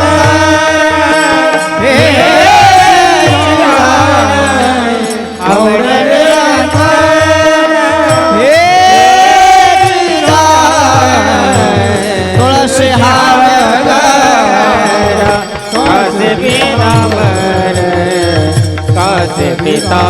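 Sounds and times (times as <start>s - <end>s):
hand drum beat: 0.0s - 20.0s
person singing devotional song: 0.0s - 20.0s
sustained accompaniment: 0.0s - 20.0s.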